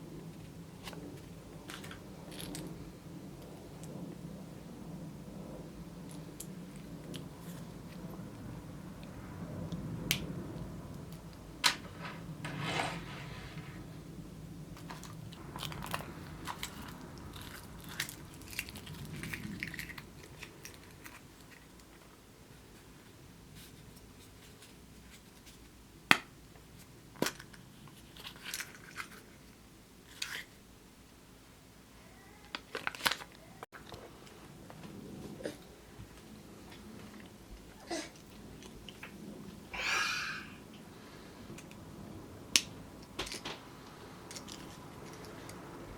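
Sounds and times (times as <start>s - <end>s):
wrapper crinkling: 14.8s - 22.0s, 32.5s - 33.6s.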